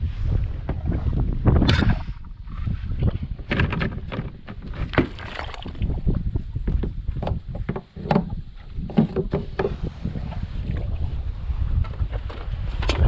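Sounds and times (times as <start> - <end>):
wind buffeting microphone: 0.0 - 13.0
water splashing against kayak: 0.2 - 6.4.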